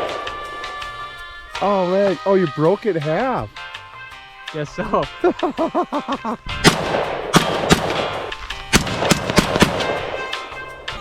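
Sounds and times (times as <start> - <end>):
background music: 0.0 - 11.0
gunshots: 6.6 - 10.5.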